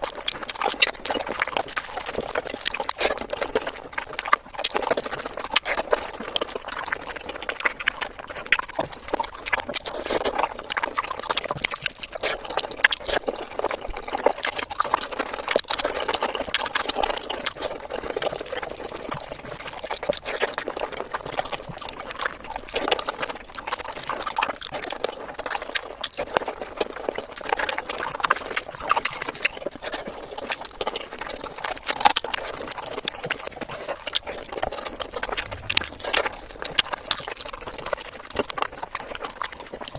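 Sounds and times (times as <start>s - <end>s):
person chewing with mouth sounds: 0.0s - 39.9s.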